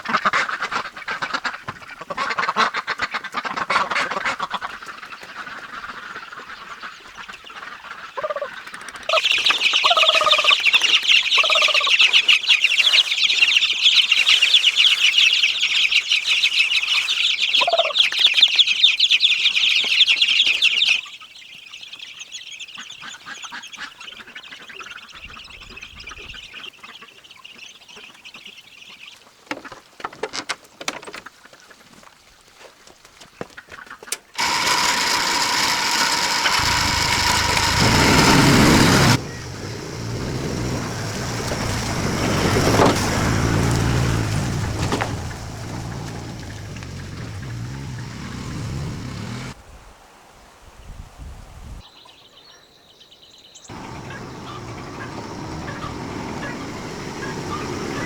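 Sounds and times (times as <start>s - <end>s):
loud high-pitched buzz: 34.4s - 43.8s.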